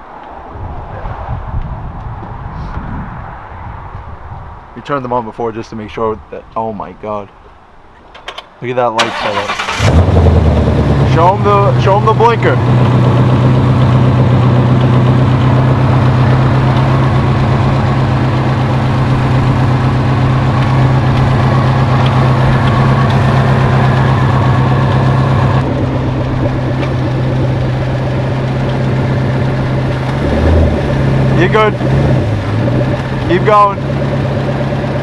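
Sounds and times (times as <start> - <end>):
car engine idling: 9.0 - 35.0.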